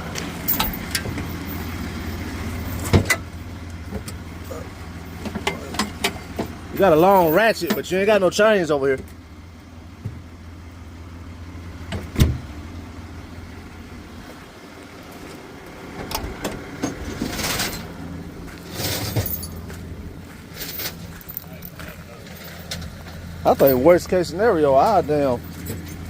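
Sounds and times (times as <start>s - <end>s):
vehicle engine idling: 0.0s - 26.0s
clinks: 0.2s - 1.8s, 5.0s - 8.1s, 18.5s - 19.8s, 20.5s - 26.0s
rustling: 17.0s - 23.3s.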